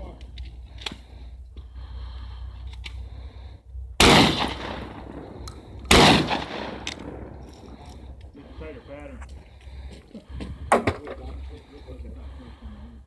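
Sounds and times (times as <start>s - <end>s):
shotgun shots with echo: 4.0s - 8.0s.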